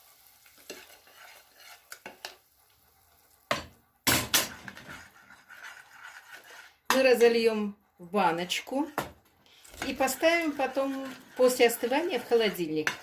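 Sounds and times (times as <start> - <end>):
spoon scraping a pot: 0.6 - 2.4, 4.3 - 7.5, 8.5 - 13.0
kitchenware clatter: 3.5 - 5.0.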